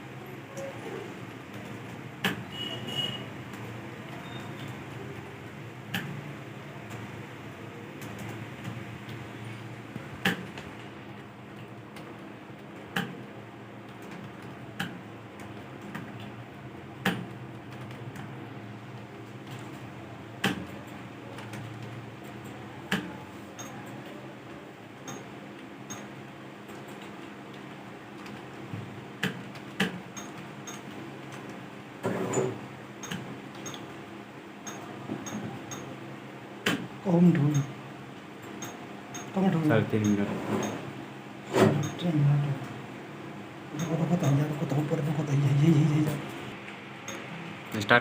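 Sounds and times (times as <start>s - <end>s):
steady background hum: 0.0s - 48.0s
computer keyboard keystrokes: 8.0s - 9.2s, 12.9s - 13.2s, 13.9s - 16.3s, 17.0s - 18.3s, 20.4s - 24.1s, 28.2s - 28.5s, 29.2s - 31.6s, 33.0s - 33.9s.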